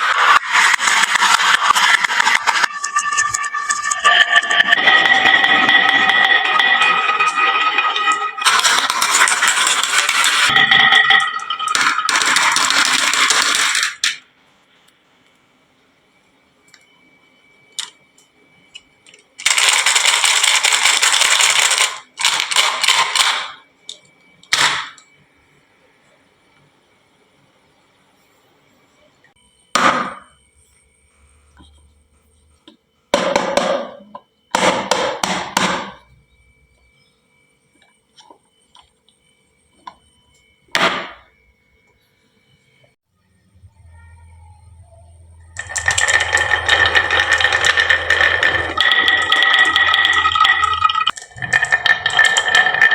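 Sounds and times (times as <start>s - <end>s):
marbles clattering down wooden slope: 0.0s - 14.2s, 19.4s - 23.5s, 45.5s - 52.9s.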